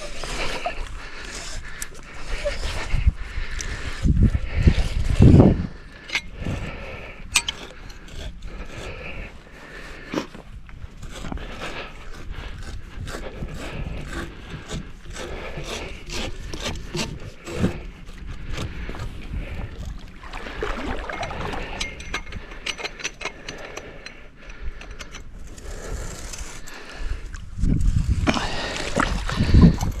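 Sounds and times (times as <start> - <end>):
parts scraping and rubbing: 4.6 - 19.1, 21.0 - 27.0.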